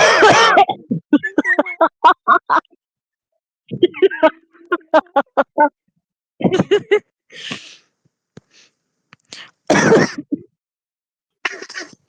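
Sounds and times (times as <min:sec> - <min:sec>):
person coughing: 0:00.0 - 0:02.0, 0:09.7 - 0:10.4.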